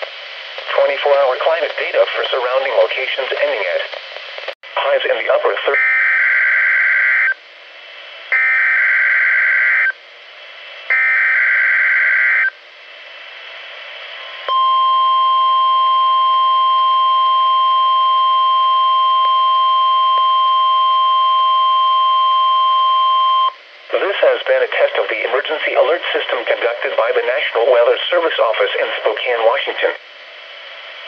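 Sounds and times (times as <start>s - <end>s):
steady warning alarm tone: 5.8s - 7.4s, 8.3s - 10.0s, 10.9s - 12.6s.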